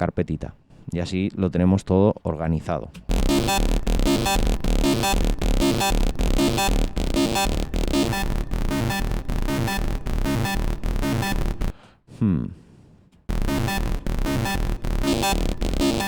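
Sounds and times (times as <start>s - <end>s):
hard techno loop: 3.1s - 11.7s, 13.3s - 16.0s.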